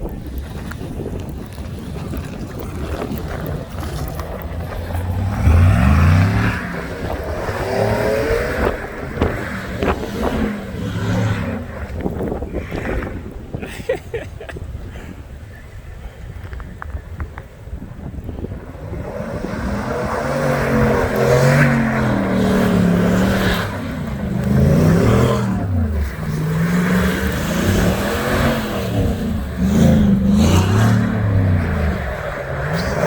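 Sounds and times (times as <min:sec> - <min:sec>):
truck engine revving: 0:03.2 - 0:12.2, 0:18.8 - 0:33.0.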